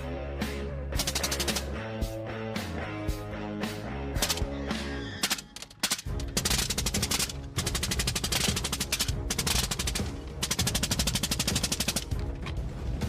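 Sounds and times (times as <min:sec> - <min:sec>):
background music: 0:00.0 - 0:13.0
machine gun firing bursts: 0:01.0 - 0:01.7, 0:04.2 - 0:04.4, 0:05.2 - 0:12.3.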